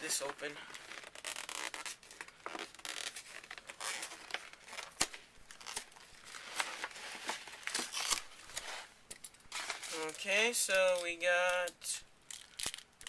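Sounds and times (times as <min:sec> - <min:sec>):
package tearing and crinkling: 0:00.8 - 0:08.9.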